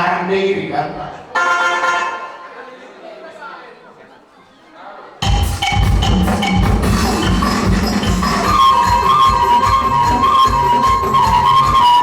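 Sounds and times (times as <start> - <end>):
pitched melody notes: 1.4 - 2.8, 5.2 - 12.0
drums: 5.2 - 12.0
woody percussion hits: 5.2 - 12.0.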